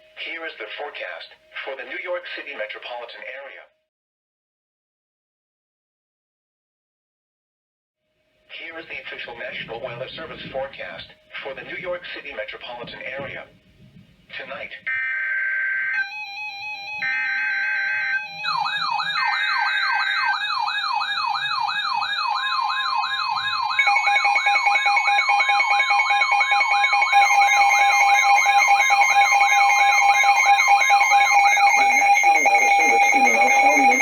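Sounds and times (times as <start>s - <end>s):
wailing siren tone: 14.9s - 34.0s
screechy data bursts: 27.1s - 34.0s
steady alert tone: 27.1s - 34.0s.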